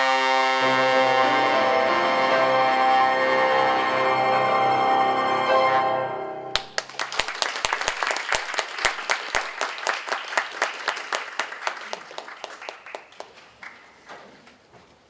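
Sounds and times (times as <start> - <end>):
congregation applauding: 6.6 - 14.1.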